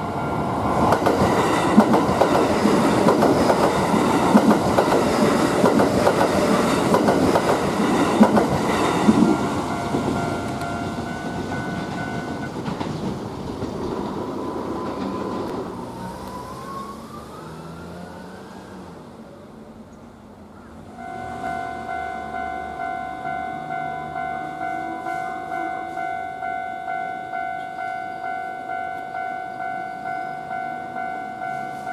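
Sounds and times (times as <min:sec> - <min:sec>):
level crossing warning bells: 0:00.0 - 0:12.7, 0:20.9 - 0:31.9
train wheels clattering over rail joints: 0:00.8 - 0:15.7.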